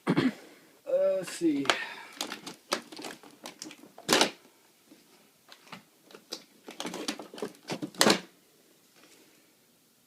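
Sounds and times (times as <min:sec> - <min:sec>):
clicks and clatters of handling parts: 0:01.6 - 0:04.4, 0:05.5 - 0:08.3.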